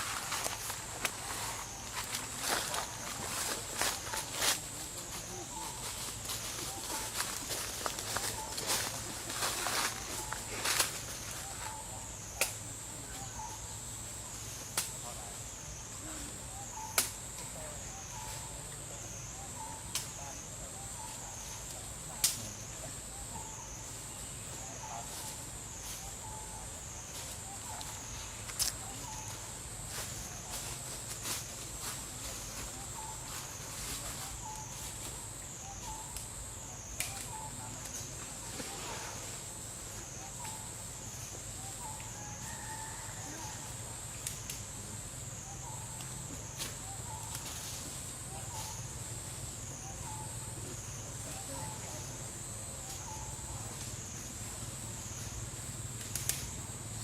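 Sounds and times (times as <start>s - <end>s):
high-pitched insect chorus: 0.0s - 57.0s
sharp clicks: 56.0s - 56.5s.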